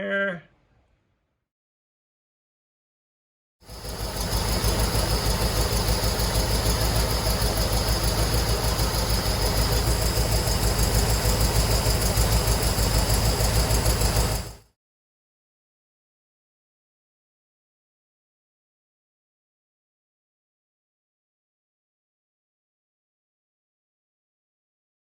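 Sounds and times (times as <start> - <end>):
engine idling: 3.6 - 14.6.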